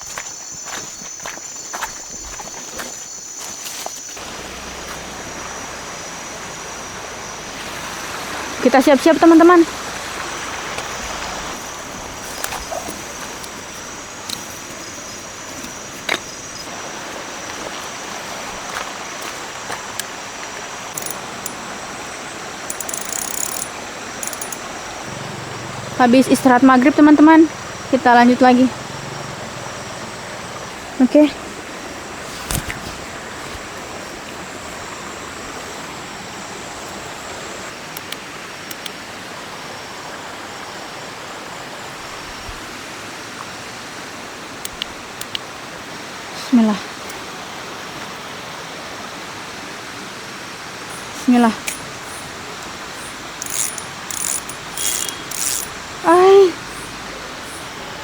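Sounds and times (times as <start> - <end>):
river water rushing: 4.2 - 22.9
river water flowing: 4.2 - 58.0
light clicks: 20.9 - 21.6, 22.7 - 24.7
small clicks: 20.9 - 21.7, 22.7 - 24.7, 38.0 - 39.0, 44.6 - 45.5, 51.6 - 55.8
rapid high ticking: 20.9 - 26.5, 50.9 - 56.1.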